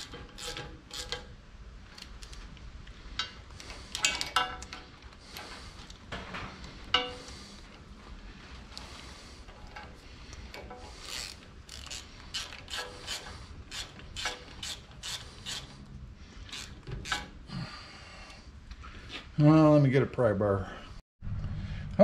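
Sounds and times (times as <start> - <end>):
metallic clicks and scrapes: 0.0 - 7.9, 8.6 - 17.5.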